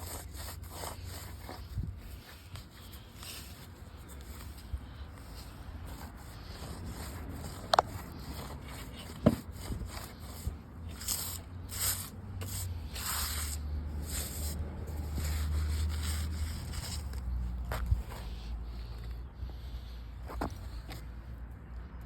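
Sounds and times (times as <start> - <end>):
weeds scraped from deck boards: 0.0 - 18.8.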